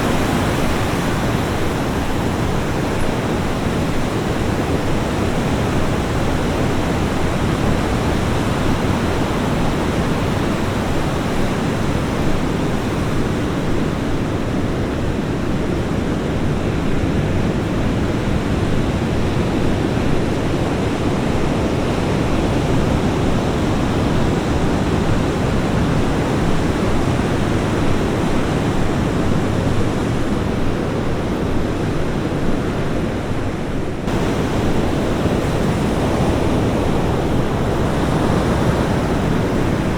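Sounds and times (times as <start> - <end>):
ocean surf breaking: 21.2 - 39.9.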